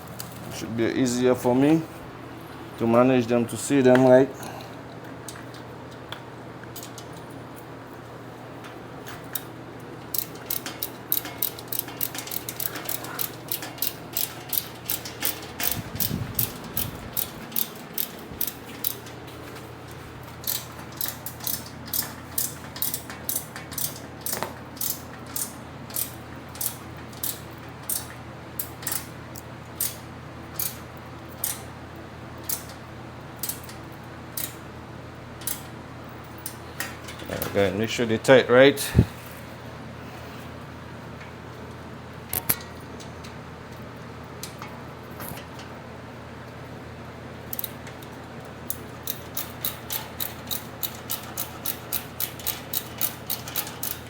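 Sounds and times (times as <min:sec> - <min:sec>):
ratchet wrench clicking: 0:10.1 - 0:19.1, 0:20.4 - 0:29.1, 0:29.8 - 0:30.0, 0:30.6 - 0:30.8, 0:32.4 - 0:32.8, 0:33.4 - 0:33.8, 0:34.4 - 0:34.6, 0:35.4 - 0:35.7, 0:47.5 - 0:48.1, 0:48.7 - 0:54.0.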